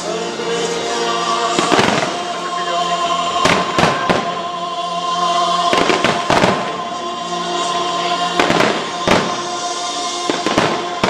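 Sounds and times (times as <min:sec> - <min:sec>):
music with long held tones: 0:00.0 - 0:11.0
fireworks bursting with sharp bangs: 0:01.5 - 0:02.4, 0:03.4 - 0:04.4, 0:05.7 - 0:06.8, 0:08.3 - 0:11.0.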